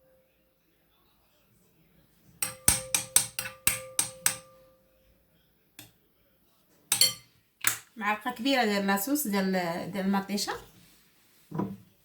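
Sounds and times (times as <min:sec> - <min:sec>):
spoon tapping a ringing dish: 0:02.4 - 0:04.8, 0:06.9 - 0:07.3.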